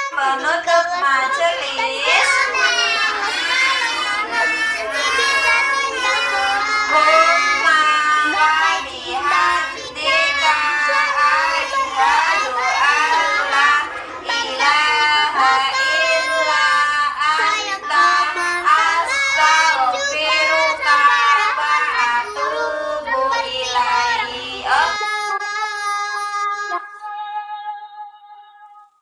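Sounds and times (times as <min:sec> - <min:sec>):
children singing together: 0:00.0 - 0:25.0.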